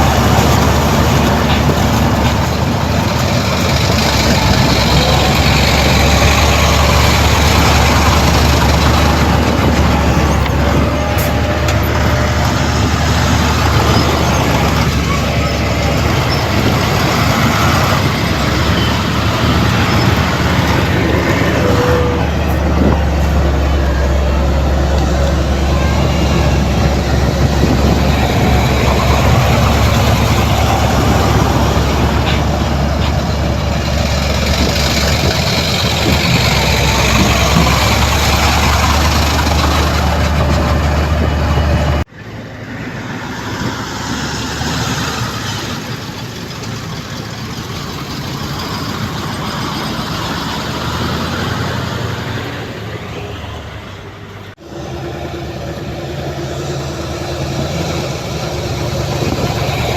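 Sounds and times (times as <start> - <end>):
heavy machinery engines running: 0.0 - 59.9.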